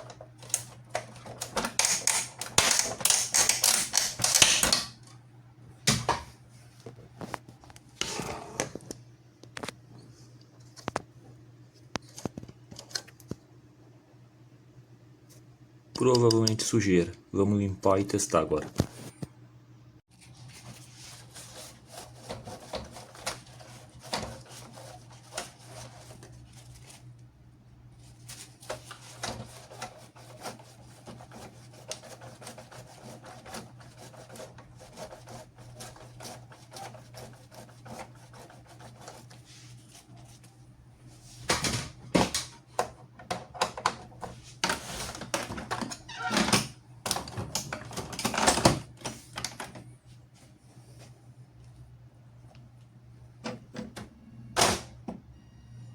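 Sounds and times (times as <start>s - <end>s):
printer mechanism clicks and rattles: 0.0s - 5.1s, 41.6s - 49.8s.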